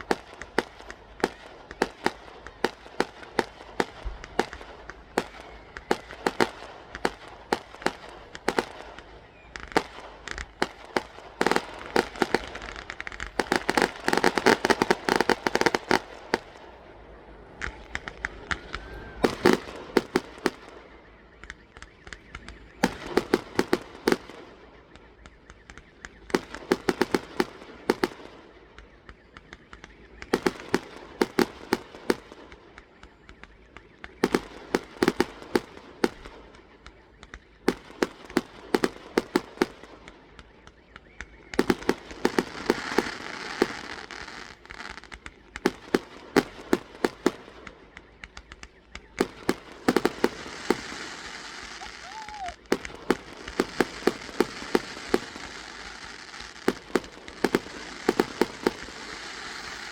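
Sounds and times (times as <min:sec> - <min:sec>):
fireworks cracking: 0:00.0 - 0:59.9
fireworks hissing rush: 0:49.8 - 0:59.9.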